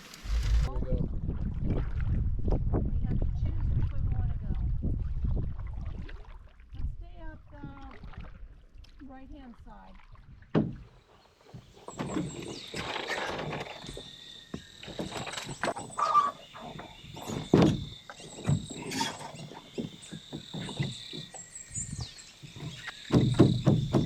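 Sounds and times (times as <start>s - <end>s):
paddle knocks and splashes: 0.0s - 9.0s, 10.0s - 24.0s
insects singing: 11.6s - 24.0s.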